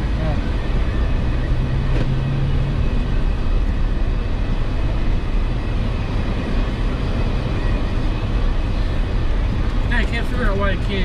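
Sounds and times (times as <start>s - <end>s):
vehicle engine low rumble: 0.0s - 11.0s.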